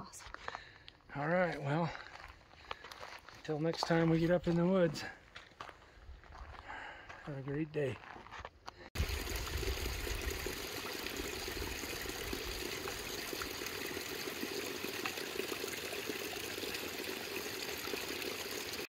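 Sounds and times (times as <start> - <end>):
mountain stream rushing water: 9.0 - 18.9.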